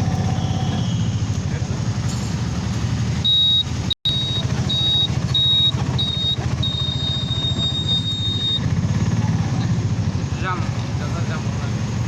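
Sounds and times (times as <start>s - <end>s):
vehicle engine and road rumble: 0.0s - 12.0s
high-pitched electronic beeps: 3.2s - 8.6s.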